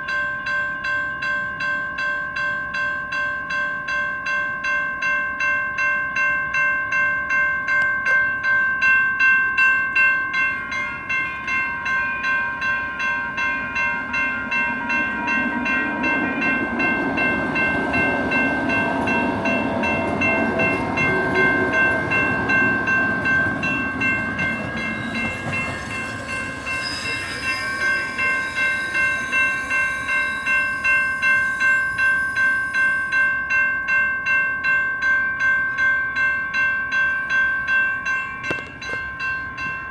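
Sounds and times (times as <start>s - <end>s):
railroad crossing bells dinging: 0.0s - 39.9s
train rumbling past: 10.0s - 34.0s.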